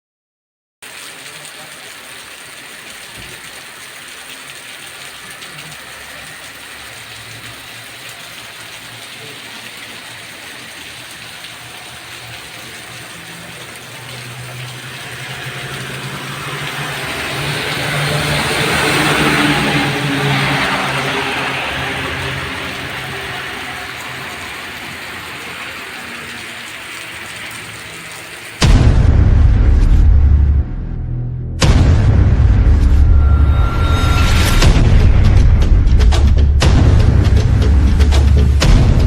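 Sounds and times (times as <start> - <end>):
heavy rain hissing: 0.8 - 30.6, 31.6 - 39.0
vehicle engine hum: 11.0 - 39.0.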